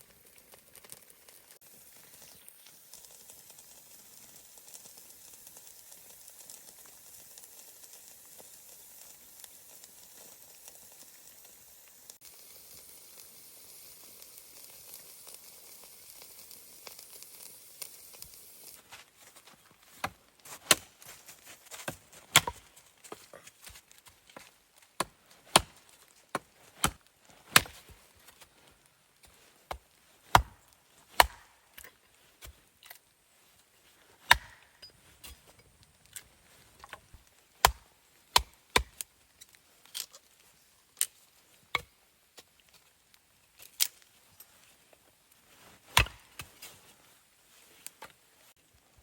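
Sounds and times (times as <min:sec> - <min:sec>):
axe chopping wood: 0:20.0 - 0:20.9, 0:21.8 - 0:22.6, 0:25.0 - 0:28.0, 0:29.7 - 0:31.6, 0:34.2 - 0:34.7, 0:37.6 - 0:39.0, 0:45.9 - 0:46.5.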